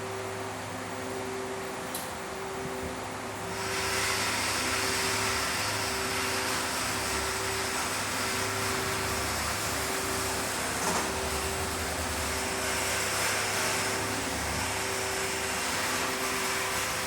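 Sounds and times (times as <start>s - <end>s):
machine whirring hiss: 0.0s - 17.0s
steady low hum: 0.0s - 17.0s.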